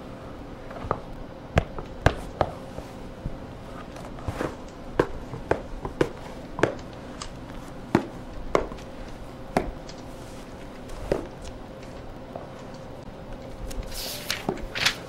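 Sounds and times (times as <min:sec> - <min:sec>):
faint hum: 0:00.0 - 0:15.0.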